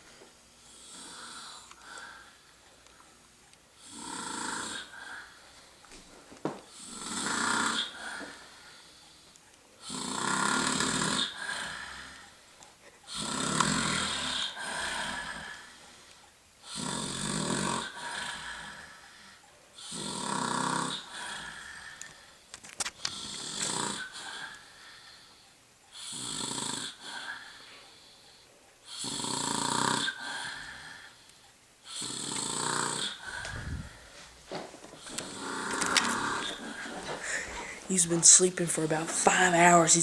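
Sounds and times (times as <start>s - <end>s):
quiet breathing: 0.0s - 6.8s, 7.7s - 9.8s, 11.2s - 13.2s, 17.9s - 19.8s, 20.9s - 26.2s, 26.9s - 29.1s, 30.1s - 39.3s
heavy rasping snoring: 3.8s - 5.4s, 6.7s - 8.8s, 9.8s - 12.3s, 13.1s - 15.7s, 16.6s - 19.0s, 19.8s - 22.0s, 23.1s - 24.6s, 26.0s - 27.5s, 28.9s - 31.2s, 31.9s - 38.3s.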